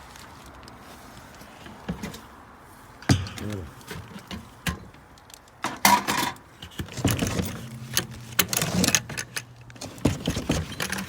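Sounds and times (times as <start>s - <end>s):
low steady hum: 3.0s - 4.4s, 7.0s - 9.8s
metal tools clinking: 3.0s - 4.9s, 5.7s - 11.0s.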